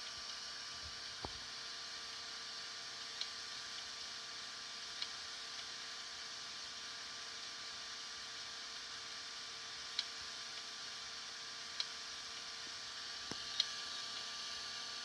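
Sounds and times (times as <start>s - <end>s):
hard drive hum and hiss: 0.0s - 15.0s
hard drive clicks: 0.8s - 1.8s.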